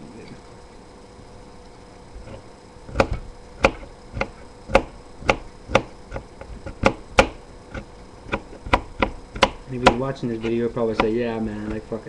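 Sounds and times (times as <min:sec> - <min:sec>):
knife chopping on cutting board: 0:02.9 - 0:12.0.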